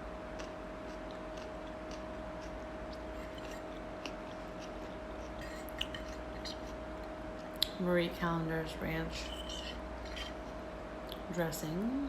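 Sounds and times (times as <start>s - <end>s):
steady background hum: 0.0s - 12.0s
chewing crunches: 0.3s - 7.8s, 9.0s - 11.3s
mouth clicks: 4.6s - 6.8s.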